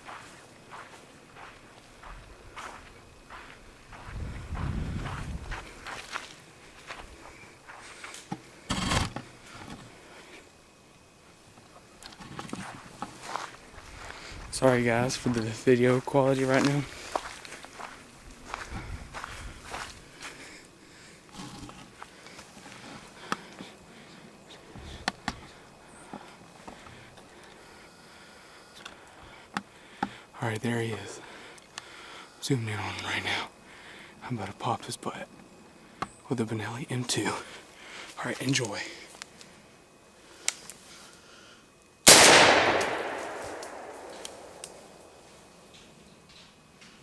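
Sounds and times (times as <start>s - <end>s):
footsteps in dry leaves: 16.0s - 20.5s
twigs snapping: 40.4s - 40.8s, 42.2s - 45.1s
shotgun shot: 42.1s - 44.7s.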